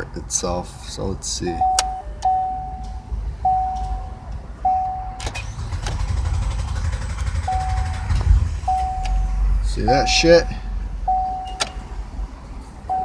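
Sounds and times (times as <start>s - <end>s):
dashboard warning chime: 1.5s - 5.4s, 8.7s - 9.2s, 9.9s - 11.9s
starter cranking engine: 4.6s - 10.4s.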